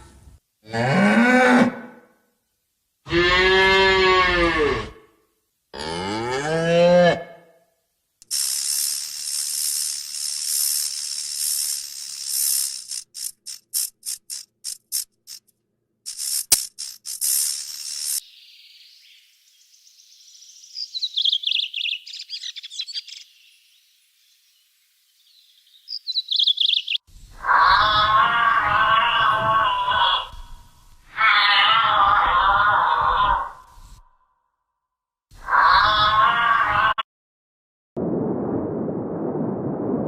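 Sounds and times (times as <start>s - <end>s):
cow mooing: 5.8s - 7.4s
quick bird-like chirps: 16.1s - 18.3s, 20.7s - 23.4s, 25.9s - 27.0s.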